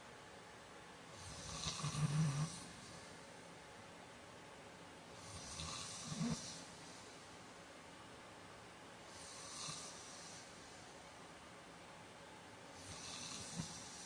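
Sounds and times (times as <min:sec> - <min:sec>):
man snoring: 0:01.2 - 0:02.7, 0:05.2 - 0:06.6, 0:09.2 - 0:10.4, 0:12.8 - 0:14.0.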